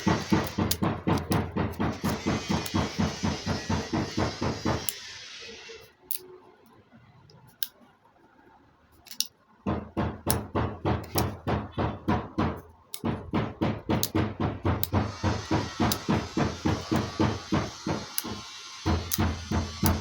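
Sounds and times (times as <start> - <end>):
background music with steady beat: 0.0 - 5.0, 9.7 - 20.0.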